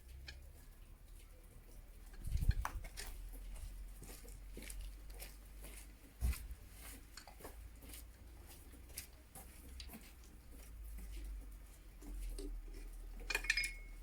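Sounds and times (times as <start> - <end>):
hand tools clicking on metal: 13.2 - 14.0.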